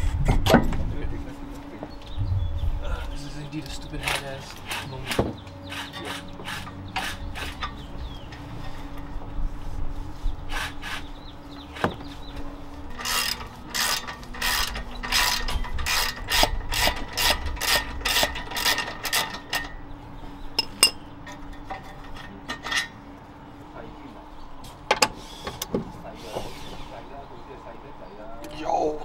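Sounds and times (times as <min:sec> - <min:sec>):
ratchet wrench clicking: 0:12.9 - 0:19.7.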